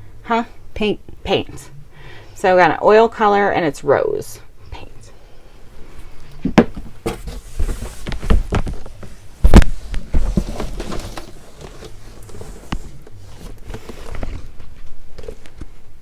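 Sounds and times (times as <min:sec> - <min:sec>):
knocks and clicks of items: 0:06.4 - 0:08.8
packaging rustling: 0:06.9 - 0:15.6.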